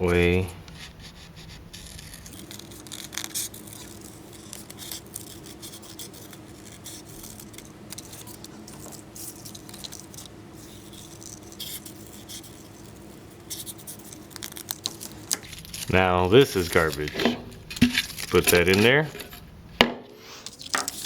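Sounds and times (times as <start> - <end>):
low room hum: 0.0 - 21.0
scissors cutting paper: 0.1 - 19.4, 20.4 - 21.0.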